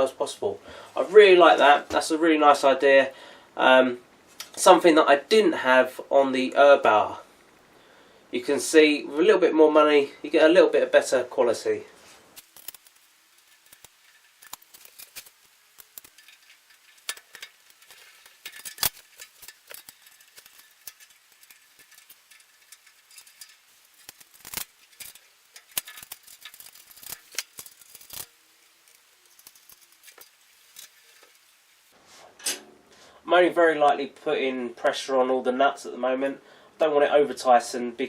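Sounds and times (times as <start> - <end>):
metal parts knocking together: 12.4 - 31.5
metallic clicks of nuts and bolts: 12.4 - 31.5.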